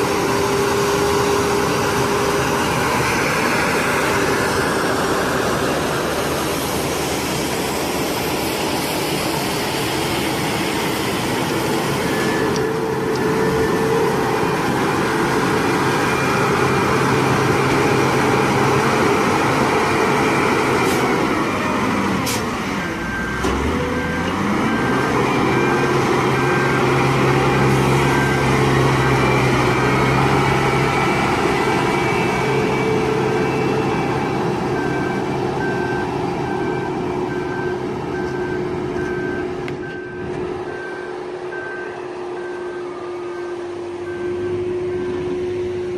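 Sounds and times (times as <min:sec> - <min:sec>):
diesel engine running: 0:00.0 - 0:45.9
reversing alarm beeping: 0:09.2 - 0:45.9.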